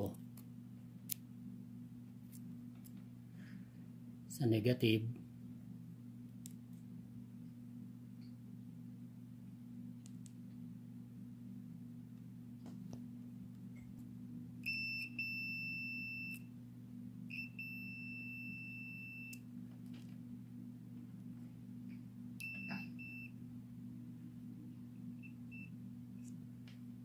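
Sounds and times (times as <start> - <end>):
low steady hum: 0.0 - 27.0
multimeter beeping: 14.6 - 16.5, 17.3 - 19.4, 22.4 - 23.4.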